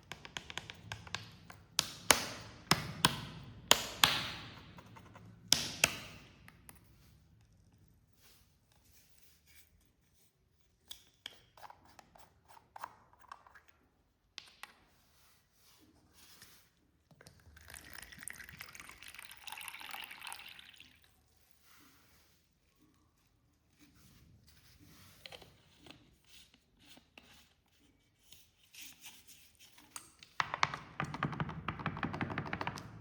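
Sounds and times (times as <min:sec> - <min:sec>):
cola pouring: 0:17.2 - 0:21.2.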